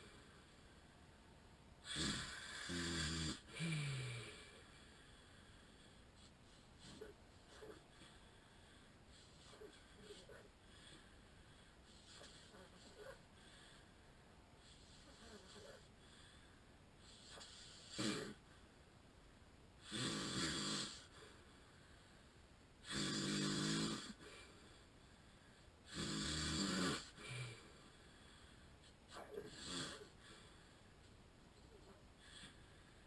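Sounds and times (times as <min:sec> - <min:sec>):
man snoring: 0:01.8 - 0:04.7, 0:17.1 - 0:18.4, 0:19.8 - 0:21.1, 0:22.8 - 0:24.5, 0:25.8 - 0:27.8, 0:29.1 - 0:30.3.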